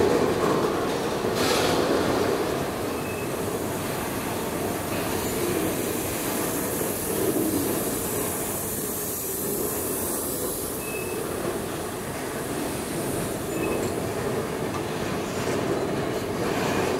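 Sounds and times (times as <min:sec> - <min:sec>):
steel wheels rumbling on rail: 0:00.0 - 0:16.9
faint wheel squeal: 0:10.8 - 0:11.3.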